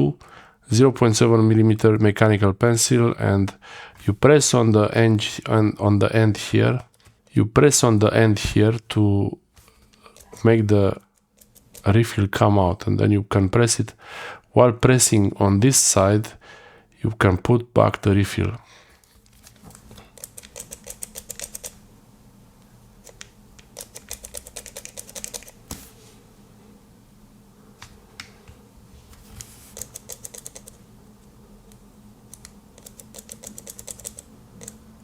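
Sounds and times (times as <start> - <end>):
mechanical pencil clicking: 20.2 - 21.8, 23.0 - 25.6, 29.8 - 30.8, 32.3 - 34.8.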